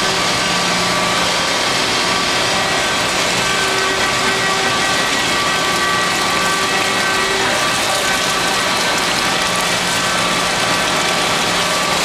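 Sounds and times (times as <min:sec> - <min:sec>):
surface grinder grinding: 0:00.0 - 0:12.0.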